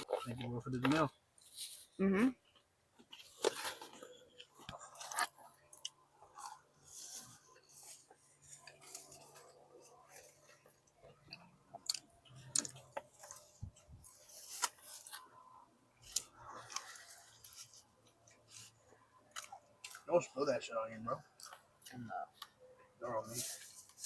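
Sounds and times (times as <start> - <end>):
crunching fried chicken: 3.2 - 6.8, 19.2 - 20.1.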